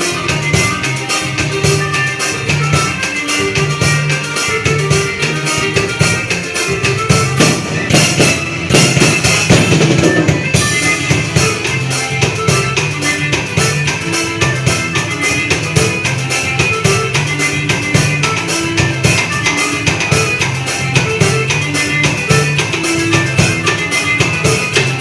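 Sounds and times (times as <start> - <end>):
drum kit playing: 0.0 - 25.0
recorded forro song with bass and keyboards: 0.0 - 25.0.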